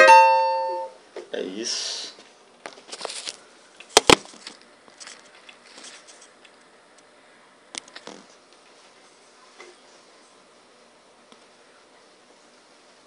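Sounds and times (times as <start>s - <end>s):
handling knocks and rustles: 2.6s - 6.6s.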